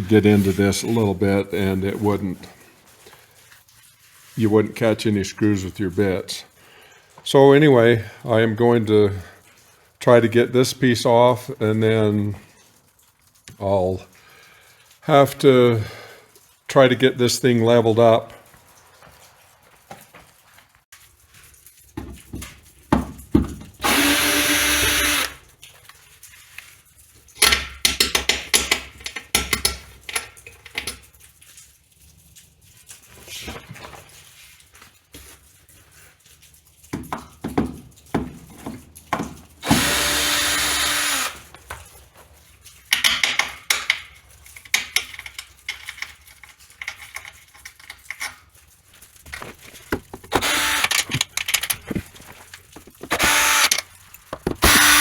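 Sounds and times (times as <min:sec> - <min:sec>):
power drill backing out screws: 0:23.8 - 0:25.4, 0:39.6 - 0:41.5, 0:49.3 - 0:55.0
handling clicks and knocks: 0:49.0 - 0:55.0.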